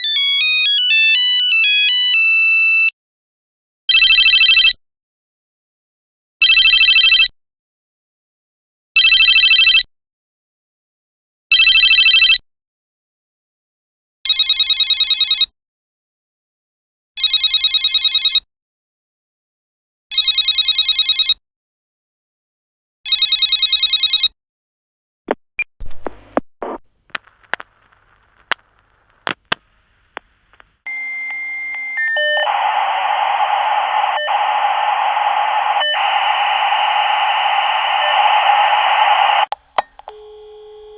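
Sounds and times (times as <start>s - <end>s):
telephone ringing: 4.0s - 4.7s, 30.0s - 40.9s
steady telephone tone: 25.9s - 40.9s.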